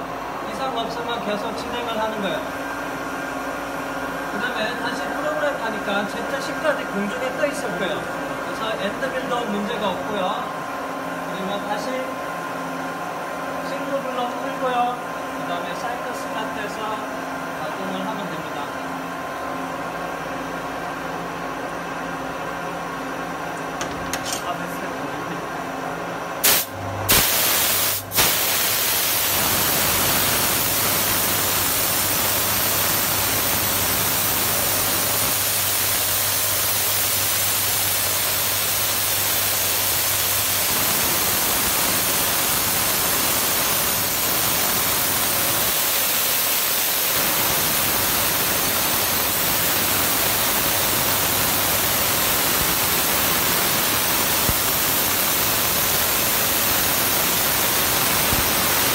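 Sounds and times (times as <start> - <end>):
coolant spraying hiss: 26.4 - 58.9.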